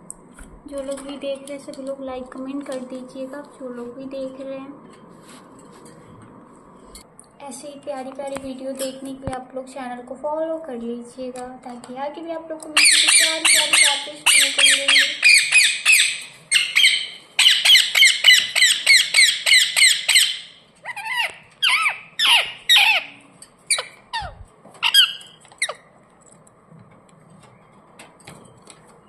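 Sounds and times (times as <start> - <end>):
parakeet screeching: 12.8 - 25.9.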